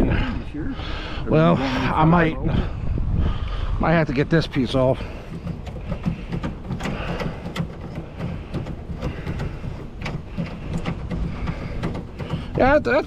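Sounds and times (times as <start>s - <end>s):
wind rumble on microphone: 2.2s - 7.5s
scrap metal clanking: 4.6s - 13.0s.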